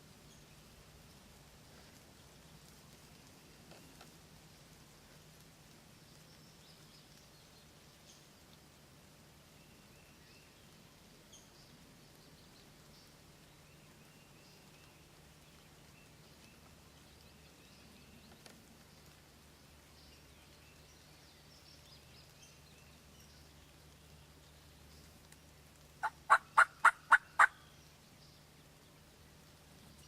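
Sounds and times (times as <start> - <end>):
background hiss: 0.0 - 30.0
distant songbird chirps: 19.8 - 30.0.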